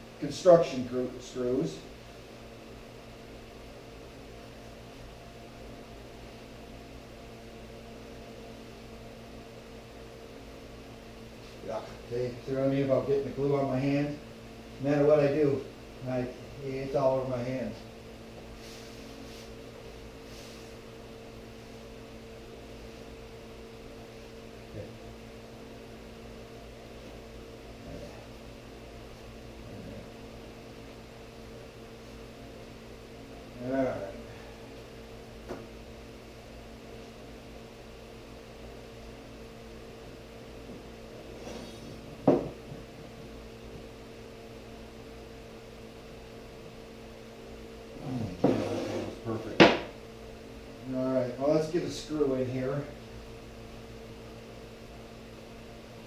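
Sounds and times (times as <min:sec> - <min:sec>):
steady hum: 0:00.0 - 0:56.0
soft brushing sounds: 0:11.3 - 0:12.0, 0:17.7 - 0:20.9
sharp knock: 0:49.6 - 0:49.9.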